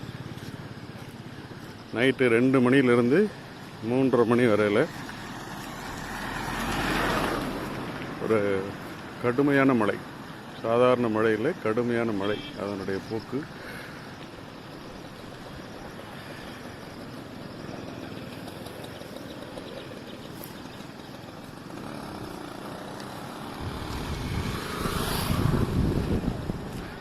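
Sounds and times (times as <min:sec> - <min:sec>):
wind buffeting microphone: 0:23.6 - 0:27.0.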